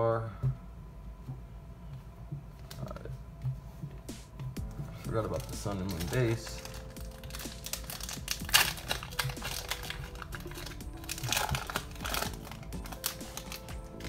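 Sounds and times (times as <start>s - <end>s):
foil wrapper crinkling and tearing: 4.8s - 14.0s.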